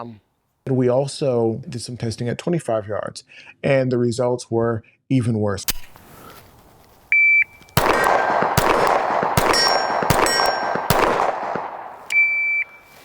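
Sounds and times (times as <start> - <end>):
bullet clanging on steel plate: 7.8 - 12.4
rapid pistol shots: 7.8 - 12.7
shot timer beep: 12.1 - 12.9.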